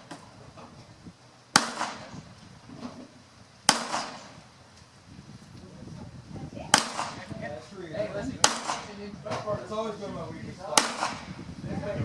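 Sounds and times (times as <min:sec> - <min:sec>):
pistol shots with echo: 0:01.5 - 0:02.2, 0:03.7 - 0:04.4, 0:06.7 - 0:07.3, 0:08.4 - 0:09.0, 0:10.7 - 0:11.4.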